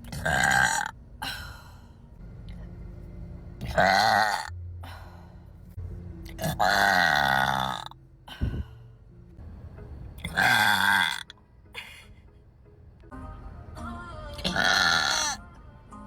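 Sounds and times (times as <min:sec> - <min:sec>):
person burping loudly: 0:00.1 - 0:00.9, 0:03.6 - 0:04.5, 0:06.3 - 0:08.5, 0:10.2 - 0:11.3, 0:14.4 - 0:15.4.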